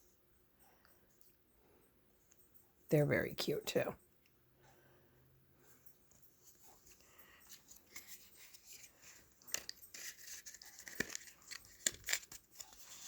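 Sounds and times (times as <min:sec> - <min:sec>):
paper packets rustling: 0:07.4 - 0:13.0
sticker sheets clicking: 0:09.5 - 0:13.0.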